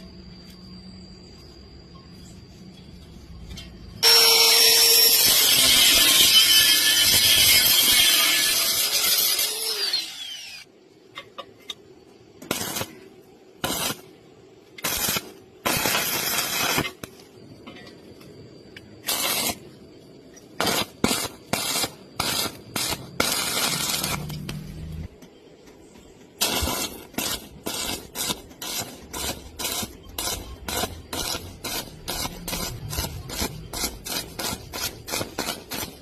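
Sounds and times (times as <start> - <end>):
power tool whine: 4.0 - 10.7
harsh bursts of metal noise: 26.4 - 36.0.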